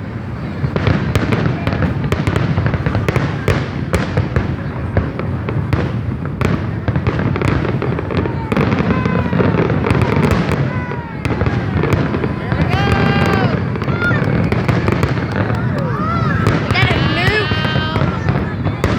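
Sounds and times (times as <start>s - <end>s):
fireworks cracking and popping: 0.1s - 18.9s.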